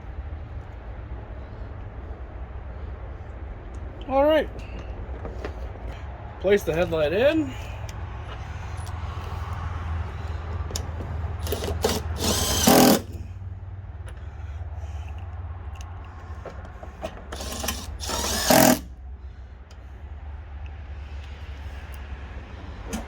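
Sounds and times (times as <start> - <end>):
steady low hum: 0.0 - 23.0
power drill running: 11.4 - 13.2, 17.3 - 18.9.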